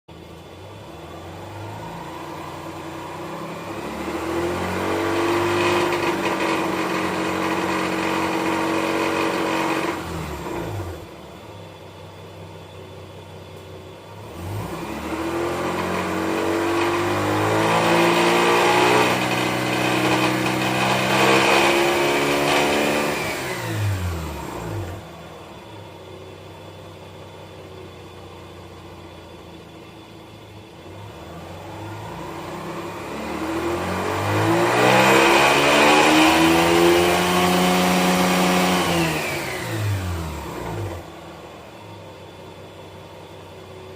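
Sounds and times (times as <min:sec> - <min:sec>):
engine revving: 0:00.8 - 0:11.2, 0:14.1 - 0:25.6, 0:30.8 - 0:43.9.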